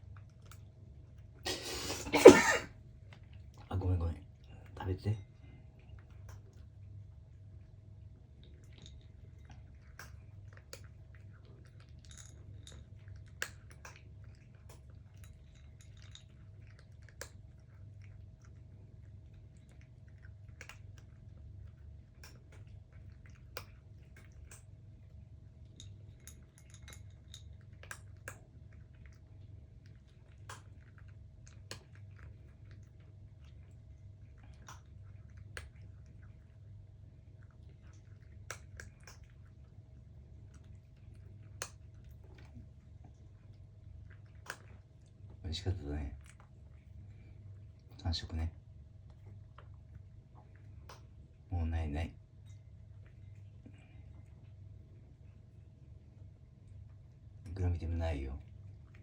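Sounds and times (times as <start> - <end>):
cats chewing food: 0.0 - 59.0
low steady hum: 0.0 - 59.0.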